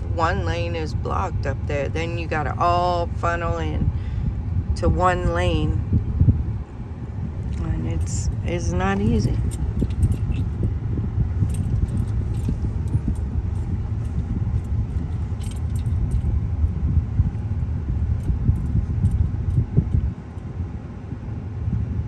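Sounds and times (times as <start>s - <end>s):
car road and engine rumble: 0.0s - 22.0s
light clicks and rattles: 7.4s - 10.8s, 11.4s - 16.4s, 17.3s - 20.4s.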